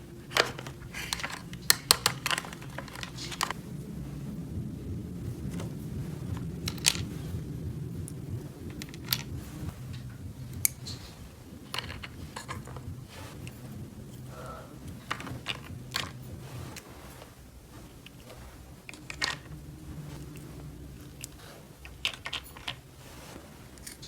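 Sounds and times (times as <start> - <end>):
steady low hum: 0.0 - 24.0
plastic toy pieces clicking: 0.3 - 3.5.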